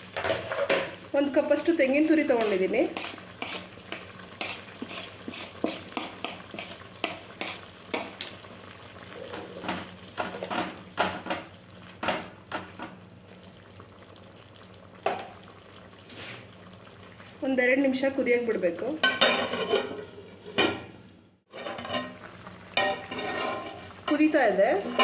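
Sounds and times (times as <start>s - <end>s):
spoon stirring in a pan: 2.0s - 8.5s, 21.5s - 25.0s.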